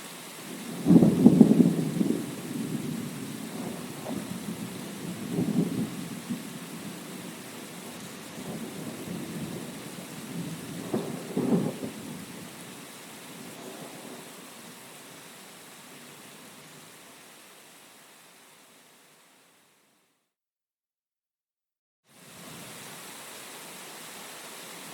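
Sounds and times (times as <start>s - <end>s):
heavy rain: 0.0s - 19.4s, 22.1s - 24.9s
thunder rumbling: 0.5s - 12.6s.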